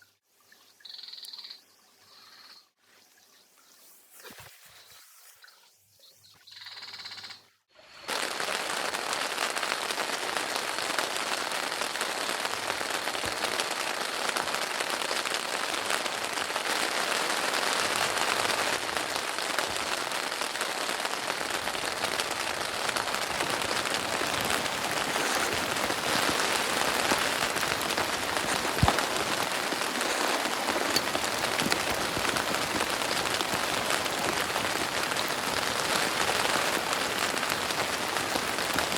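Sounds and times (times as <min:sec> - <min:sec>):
heavy rain falling: 0:08.1 - 0:38.9.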